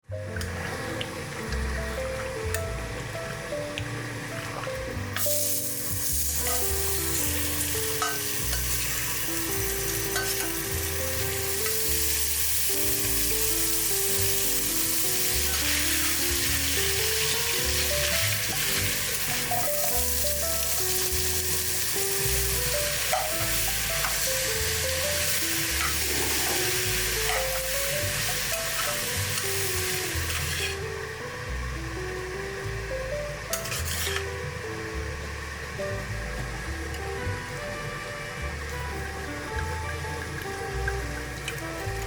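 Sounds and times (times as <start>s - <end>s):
background music: 0.0s - 42.0s
food sizzling in a hot pan: 5.0s - 31.6s, 33.4s - 34.5s
stirring in a pan: 33.6s - 34.2s.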